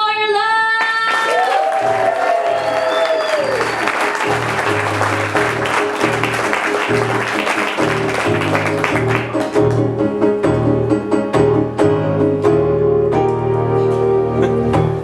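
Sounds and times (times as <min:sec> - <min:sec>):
audience applauding and cheering: 0:00.8 - 0:10.0
people whooping: 0:00.9 - 0:09.5.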